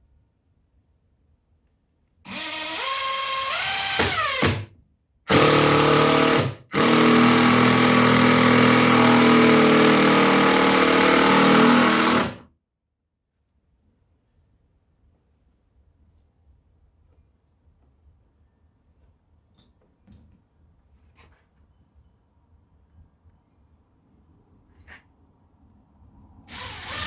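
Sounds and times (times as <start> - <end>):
power drill running: 2.3 - 4.7, 5.3 - 12.4, 26.5 - 27.0.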